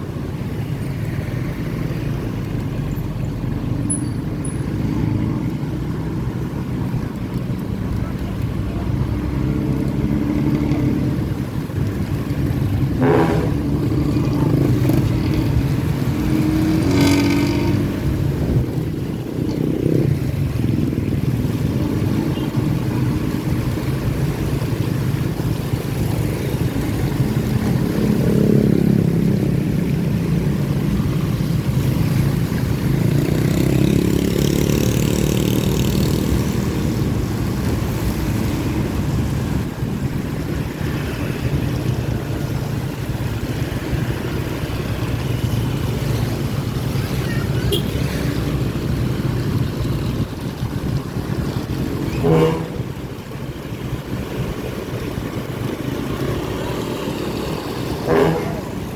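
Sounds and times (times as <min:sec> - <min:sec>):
raspy bus diesel engine: 0:35.9 - 0:58.9.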